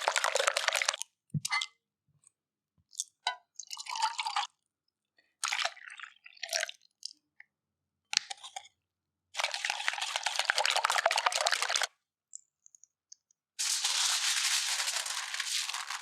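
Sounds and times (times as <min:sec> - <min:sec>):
scraping or stirring: 0:13.6 - 0:16.0.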